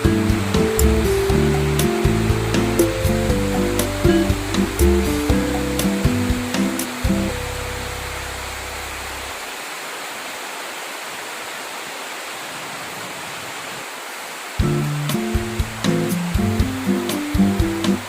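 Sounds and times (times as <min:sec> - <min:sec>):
steady rushing noise: 0:00.0 - 0:09.5.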